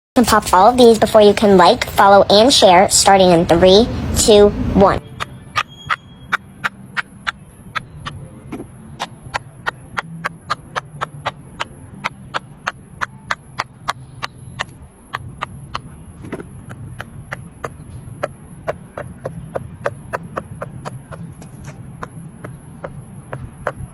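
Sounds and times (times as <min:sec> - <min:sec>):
fidget toy bubbles popping: 0:06.6 - 0:23.9.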